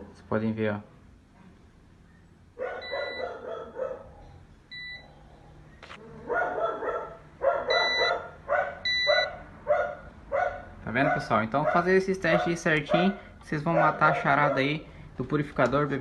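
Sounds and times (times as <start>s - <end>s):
dog barking: 2.6s - 4.4s, 6.2s - 14.8s
short beeps: 7.7s - 8.2s, 8.9s - 9.3s.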